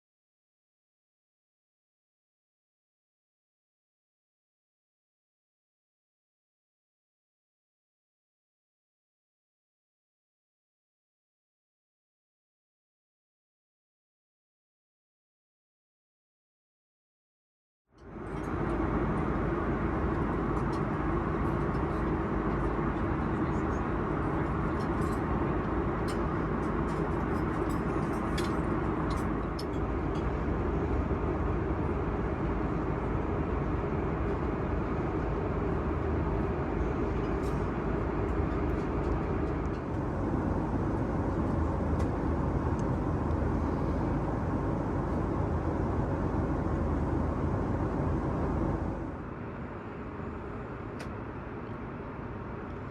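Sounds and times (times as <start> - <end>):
airplane cabin roar: 18.0 - 52.9.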